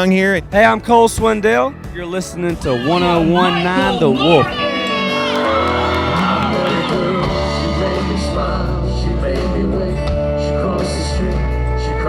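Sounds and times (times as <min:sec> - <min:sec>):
country-rock music: 0:00.0 - 0:12.0
person singing: 0:02.9 - 0:12.0.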